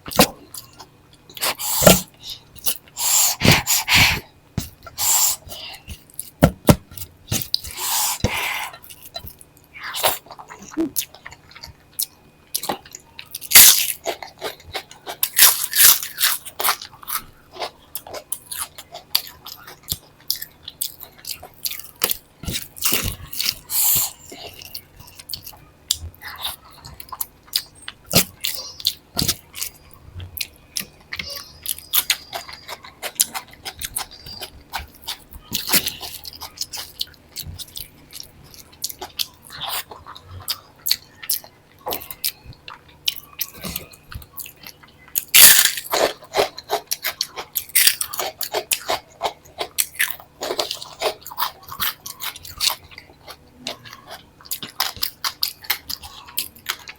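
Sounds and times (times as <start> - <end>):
person chewing wetly: 0.0 - 56.9
crunchy bites: 12.6 - 24.2, 45.2 - 56.9.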